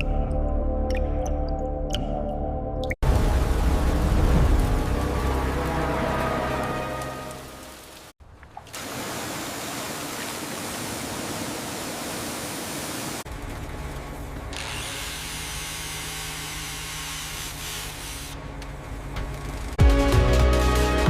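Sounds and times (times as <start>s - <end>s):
music: 0.0s - 8.1s, 18.4s - 21.0s
power tool whirring: 14.5s - 18.4s.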